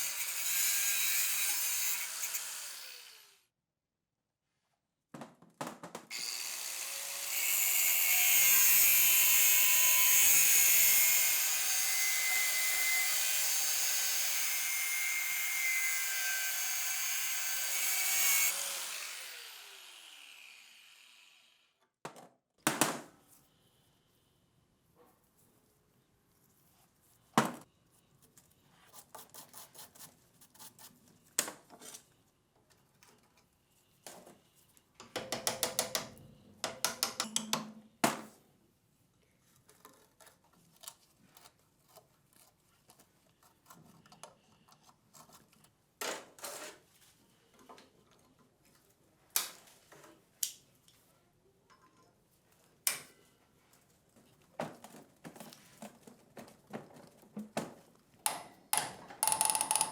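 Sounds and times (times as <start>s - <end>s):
metal tools clinking and knocking: 58.3s - 59.9s
fast even clicking: 58.8s - 59.9s.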